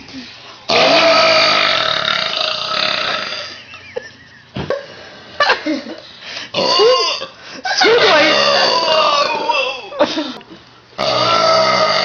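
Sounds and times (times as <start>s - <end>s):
girl belching: 0.7s - 3.6s, 6.6s - 7.3s, 7.9s - 9.9s, 11.0s - 12.0s.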